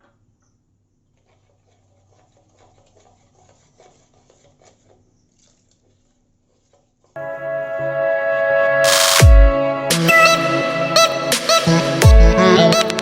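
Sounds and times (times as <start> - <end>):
spoon scraping in a bowl: 1.0 - 7.2.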